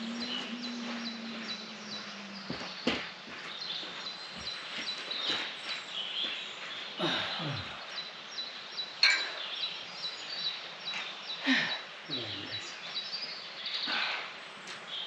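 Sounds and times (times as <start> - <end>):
low falling sounds: 0.0 - 3.8
outdoor background noise: 0.0 - 15.0
small birds chirping: 0.0 - 15.0.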